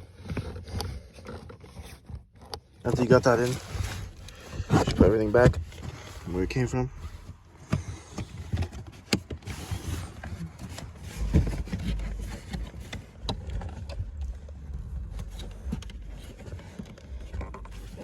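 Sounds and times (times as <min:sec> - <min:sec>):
low rumble: 0:03.0 - 0:09.0, 0:09.7 - 0:18.0.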